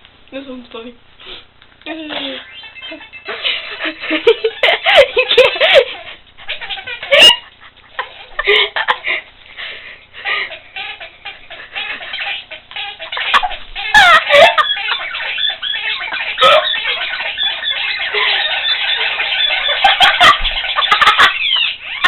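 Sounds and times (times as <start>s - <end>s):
woman laughing in squealing bursts: 2.2s - 9.2s, 10.2s - 22.0s.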